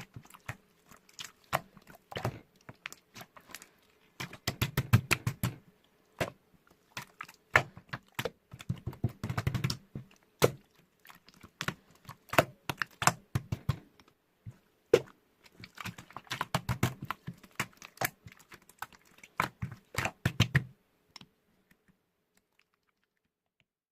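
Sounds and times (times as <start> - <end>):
irregular clicks and taps: 11.6 - 18.2.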